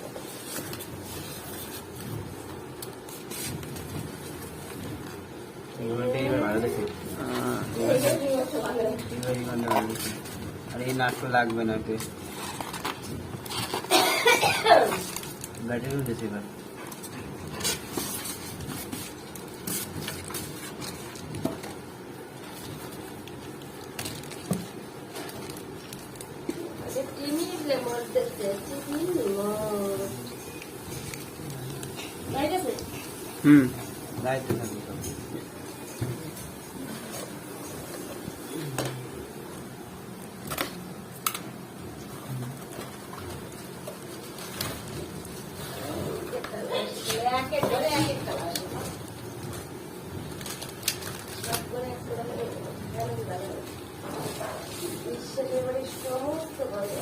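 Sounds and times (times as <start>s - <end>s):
low background hum: 0.0s - 57.0s
objects clicking and rustling: 46.3s - 54.8s.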